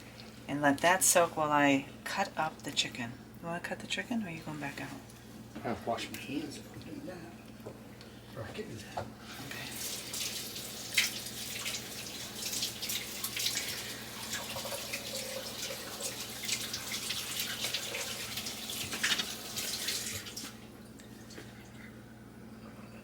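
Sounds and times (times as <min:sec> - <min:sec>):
tap water splashing: 0:10.0 - 0:20.6.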